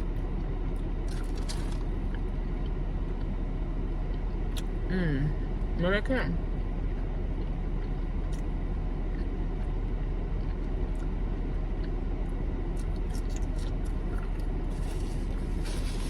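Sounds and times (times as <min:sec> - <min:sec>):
car idling inside cabin: 0:00.0 - 0:16.0
rustles: 0:14.6 - 0:16.0.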